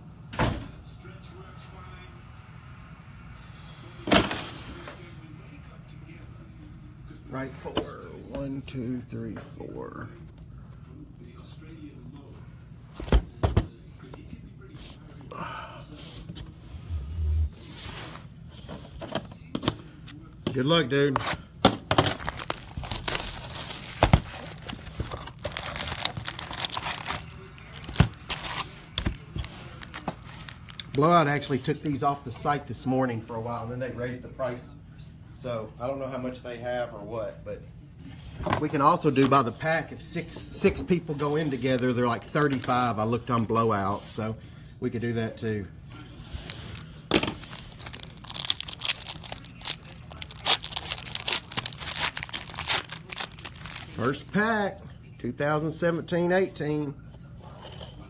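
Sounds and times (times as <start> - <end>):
plastic wrapping tearing and crinkling: 22.0 - 31.3, 46.4 - 54.2.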